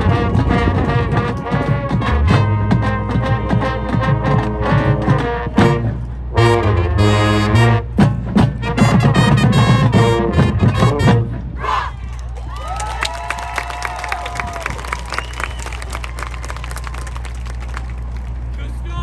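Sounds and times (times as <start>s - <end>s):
marching band brass chords: 0.0s - 11.9s.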